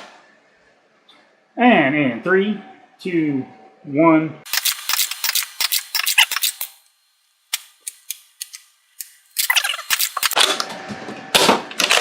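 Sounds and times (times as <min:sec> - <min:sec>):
toy blaster clicks and knocks: 0:04.5 - 0:06.7.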